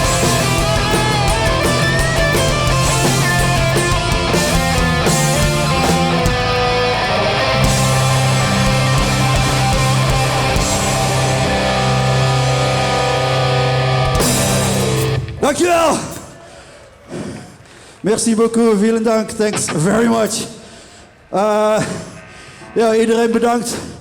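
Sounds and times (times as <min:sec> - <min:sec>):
punk band playing live: 0:00.0 - 0:15.4.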